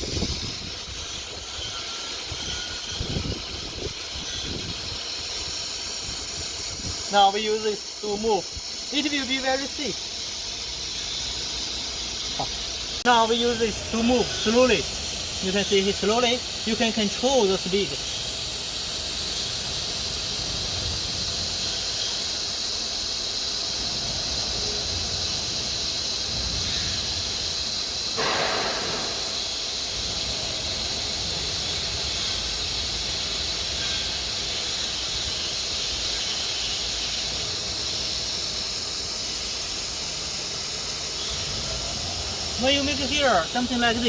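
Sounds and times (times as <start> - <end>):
high-pitched hiss: 0.0 - 44.0
rush of noise: 28.2 - 29.8.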